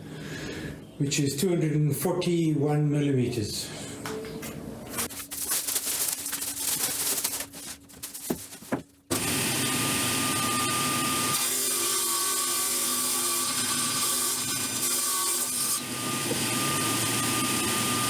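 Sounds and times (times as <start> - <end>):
wood scraping and sliding: 4.9 - 9.1
power saw ripping wood: 4.9 - 16.9.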